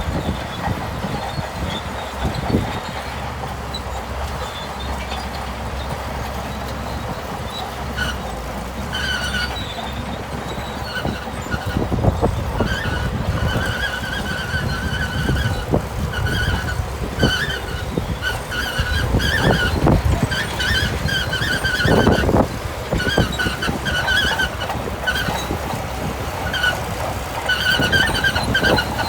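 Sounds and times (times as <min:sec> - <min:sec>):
bulldozer engine rumble: 0:00.0 - 0:29.0
high squeals: 0:06.5 - 0:29.0.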